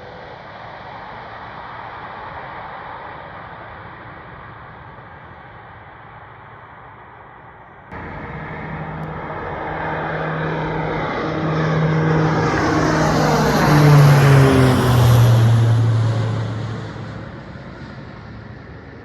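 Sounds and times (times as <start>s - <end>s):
propeller airplane flying past: 7.9s - 19.0s.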